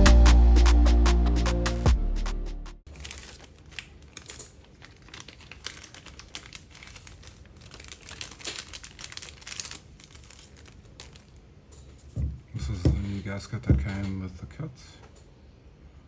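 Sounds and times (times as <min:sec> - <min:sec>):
packaging rustling: 0:02.9 - 0:12.2.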